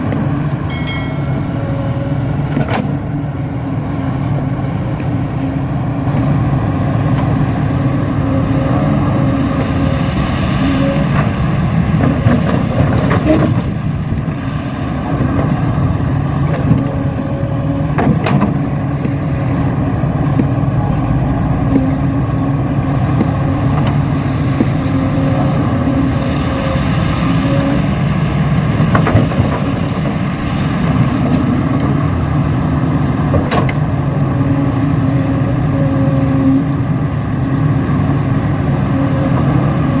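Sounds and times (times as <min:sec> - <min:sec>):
engine-like drone: 0:00.0 - 0:40.0
thin high whine: 0:00.7 - 0:02.9.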